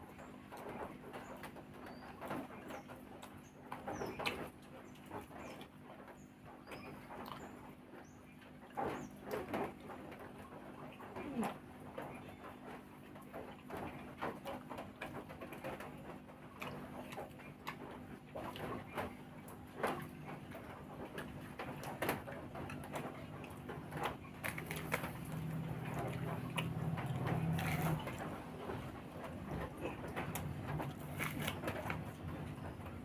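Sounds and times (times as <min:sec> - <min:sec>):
chewing and lip-smacking: 0:06.8 - 0:07.7, 0:22.6 - 0:32.5.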